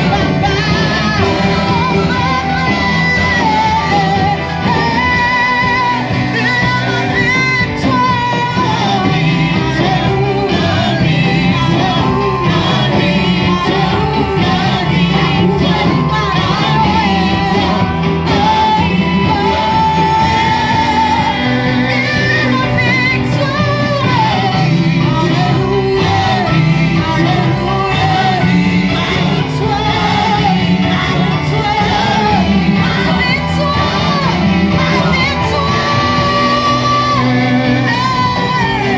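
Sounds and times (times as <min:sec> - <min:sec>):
singing over a band: 0:00.0 - 0:38.9.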